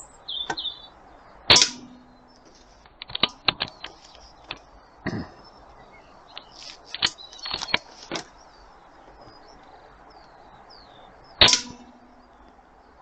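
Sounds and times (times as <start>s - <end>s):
faint birds chirping: 0.0s - 13.0s
air rifle shot: 11.4s - 11.9s.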